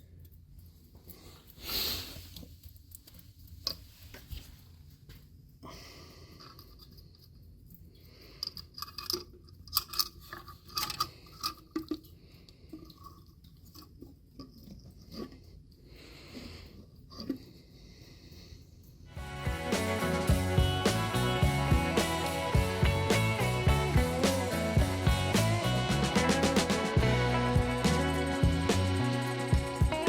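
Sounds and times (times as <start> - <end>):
small clicks taps and scrapes: 8.4 - 12.1.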